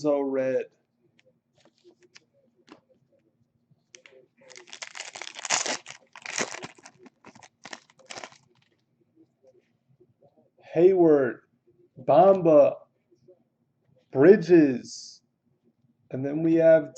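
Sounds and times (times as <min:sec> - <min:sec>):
wrapper tearing and crinkling: 0:04.5 - 0:08.6.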